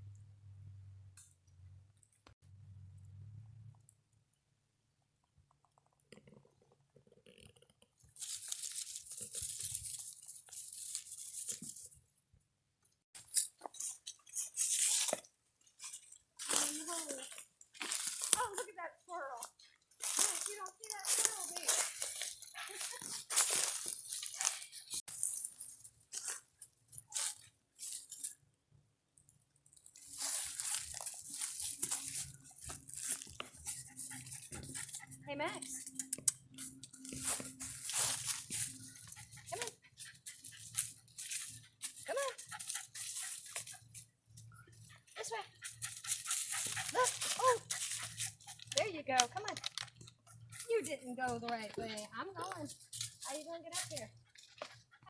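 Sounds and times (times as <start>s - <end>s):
footsteps crunching dry leaves: 16.4s - 18.8s, 20.0s - 26.5s, 29.9s - 35.0s, 37.1s - 39.2s, 46.0s - 48.5s.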